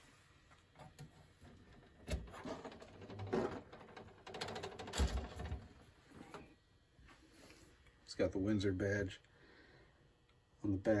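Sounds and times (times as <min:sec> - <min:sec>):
rattling and clattering: 0:01.5 - 0:05.7.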